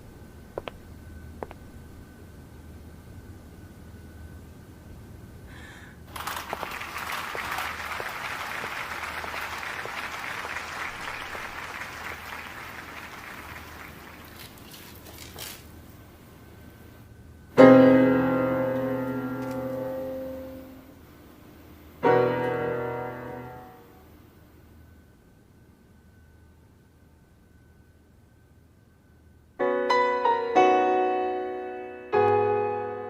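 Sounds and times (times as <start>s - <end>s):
crowd cheering: 6.1s - 14.7s
loud piano chord: 17.6s - 21.0s, 22.0s - 24.0s, 29.6s - 33.0s.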